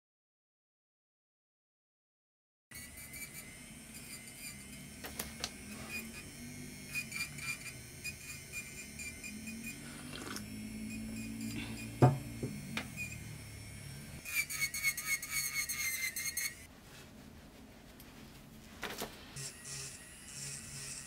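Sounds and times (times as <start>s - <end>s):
electric nail drill whining: 2.7s - 16.7s, 19.4s - 21.0s.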